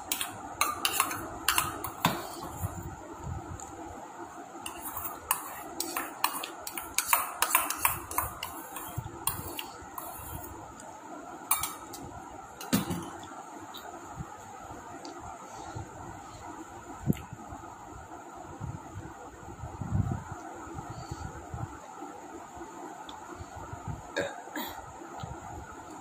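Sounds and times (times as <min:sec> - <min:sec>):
utensils clinking on plate: 0:00.0 - 0:02.5, 0:04.7 - 0:10.4, 0:11.5 - 0:12.0.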